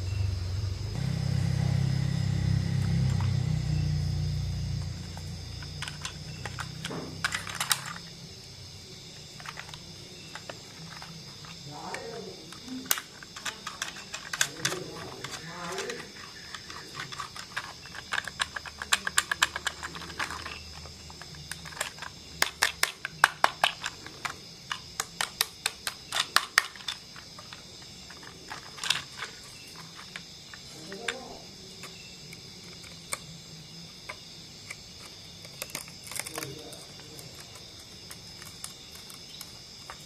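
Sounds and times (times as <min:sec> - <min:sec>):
faint high whine: 0:00.0 - 0:18.2
model train clicks: 0:11.9 - 0:30.2.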